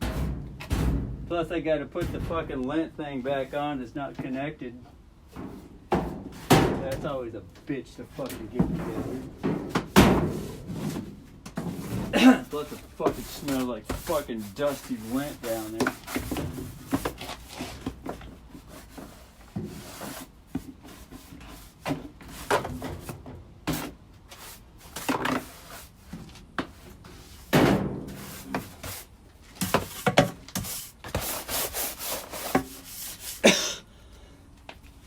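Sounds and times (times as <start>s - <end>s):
duct scraping and rubbing: 0.0s - 2.5s, 5.2s - 33.6s.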